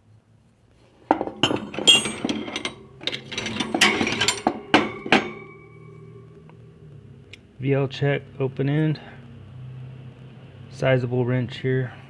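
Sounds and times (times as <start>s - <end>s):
hand tools clattering in toolbox: 0.9s - 6.3s
ringing metallic tone: 1.1s - 6.8s.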